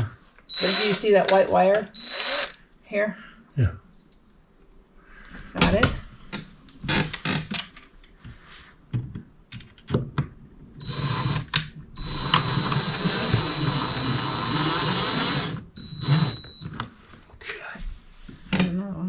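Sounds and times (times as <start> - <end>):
power drill driving a screw: 0.5 - 1.1, 2.0 - 2.6, 10.8 - 16.6.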